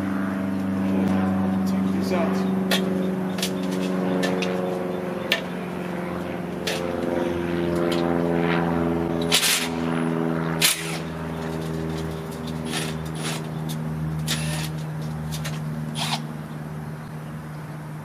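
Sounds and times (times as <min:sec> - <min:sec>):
steady motor hum: 0:00.0 - 0:18.0.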